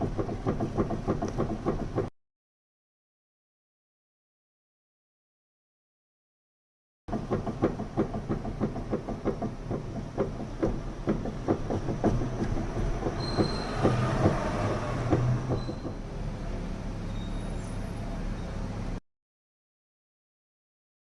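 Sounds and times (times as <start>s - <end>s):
car suspension clunking: 0.0s - 2.1s, 7.1s - 16.2s
steady rumble: 7.1s - 17.0s.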